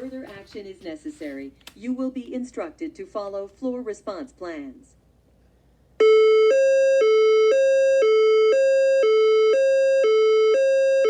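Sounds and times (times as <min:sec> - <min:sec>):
alarm alternating low and high tones: 0:06.0 - 0:11.0.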